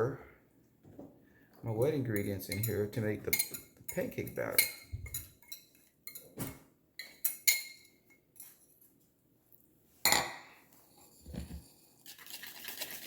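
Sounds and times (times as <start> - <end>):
dishes and utensils clinking: 2.1 - 8.8, 10.1 - 11.8.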